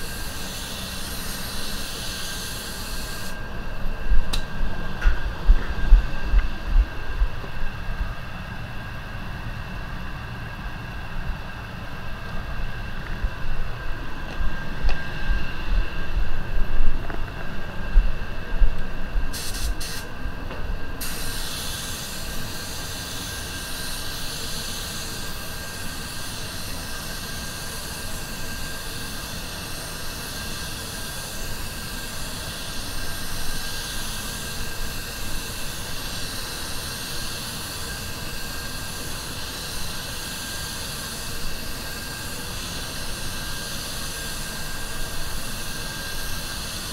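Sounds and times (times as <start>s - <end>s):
spray gun hissing: 0.0s - 3.4s, 19.3s - 20.1s, 21.0s - 46.9s
low steady rumble: 3.5s - 19.4s.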